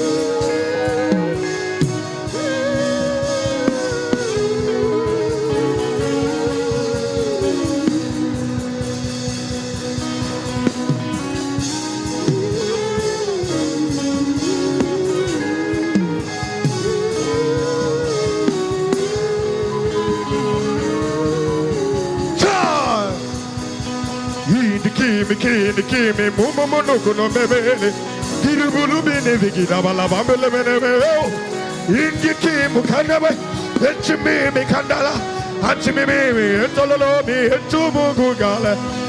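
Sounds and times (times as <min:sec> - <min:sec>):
slow wavering melody over beat: 0:00.0 - 0:39.0.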